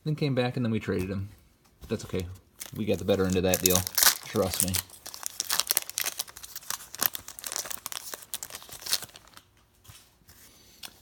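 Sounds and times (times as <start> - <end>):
wrapper tearing and crinkling: 2.6 - 9.5.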